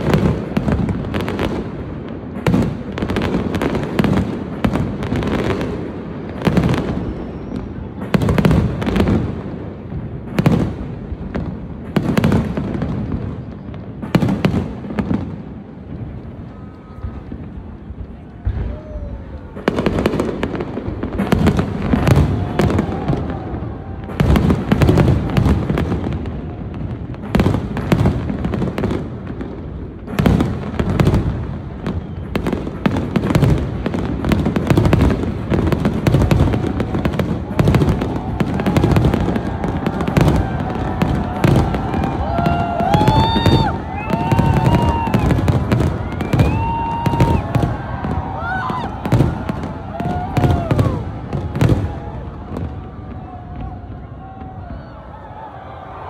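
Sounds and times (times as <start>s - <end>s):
firework whistling: 3.5s - 9.2s, 29.8s - 55.2s.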